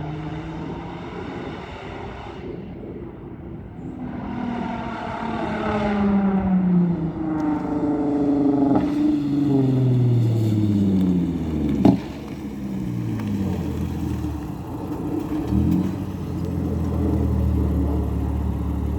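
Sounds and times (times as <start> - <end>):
car engine and exhaust: 0.0 - 18.9
exhaust pop: 7.1 - 18.9.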